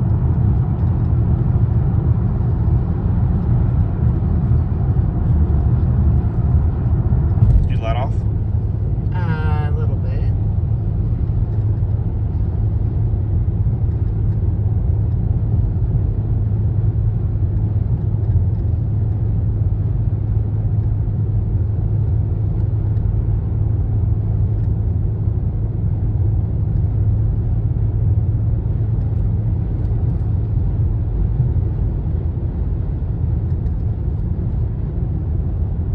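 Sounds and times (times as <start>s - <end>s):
diesel engine running: 0.0s - 13.9s.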